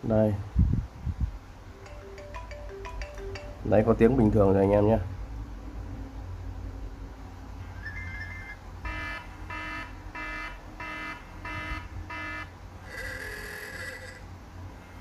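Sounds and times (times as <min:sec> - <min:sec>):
phone ringing tone: 0:01.8 - 0:03.8, 0:07.8 - 0:08.6, 0:12.9 - 0:14.3
two-note chime: 0:01.8 - 0:04.2.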